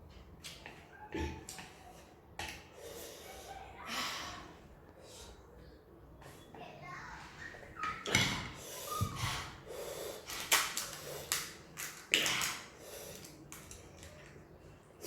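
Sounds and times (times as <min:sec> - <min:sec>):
person breathing: 0:08.6 - 0:11.5.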